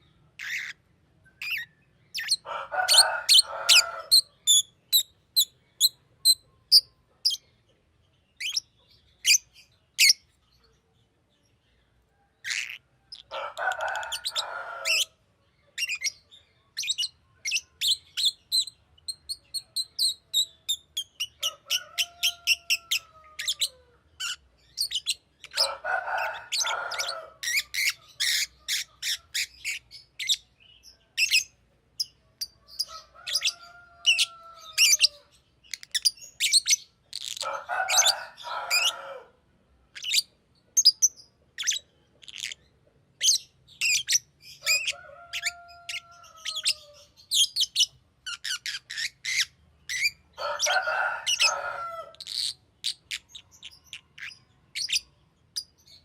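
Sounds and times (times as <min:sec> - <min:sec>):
harsh bird chattering: 0:00.4 - 0:07.4, 0:12.4 - 0:15.1, 0:16.8 - 0:30.5, 0:40.0 - 0:55.1
lovebird chirping: 0:00.4 - 0:07.6, 0:08.3 - 0:10.7, 0:12.4 - 0:25.7, 0:26.3 - 0:39.0, 0:39.9 - 0:56.0.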